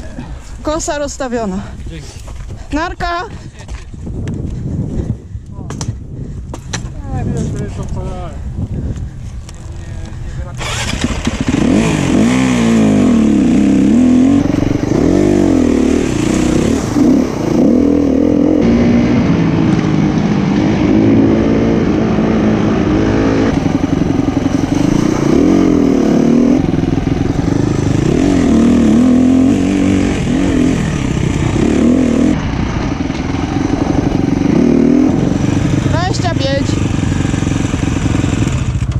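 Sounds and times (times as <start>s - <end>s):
motorcycle engine revving: 9.6s - 38.9s.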